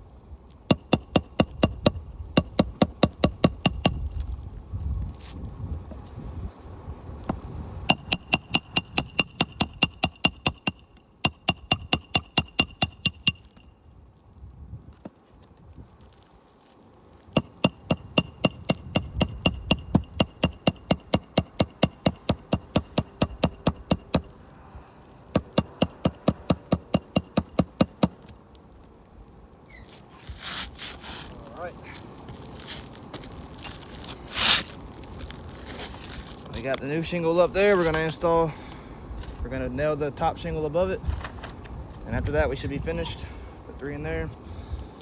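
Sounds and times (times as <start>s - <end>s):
hammer striking roofing nails: 0.7s - 4.0s, 7.9s - 13.6s, 17.4s - 24.4s, 25.3s - 28.3s.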